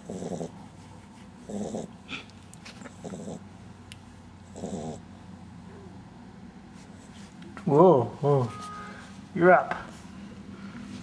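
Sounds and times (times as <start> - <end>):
puppy snoring: 0.0 - 0.8, 1.4 - 3.5, 4.4 - 5.2.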